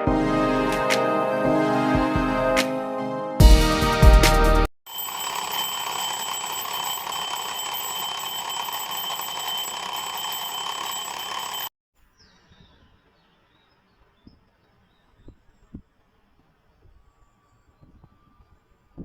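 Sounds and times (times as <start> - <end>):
alarm clock ringing: 4.9 - 11.7.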